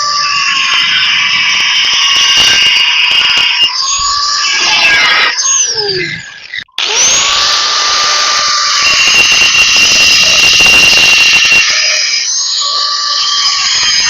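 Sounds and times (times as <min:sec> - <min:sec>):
power tool running: 0:06.8 - 0:12.1.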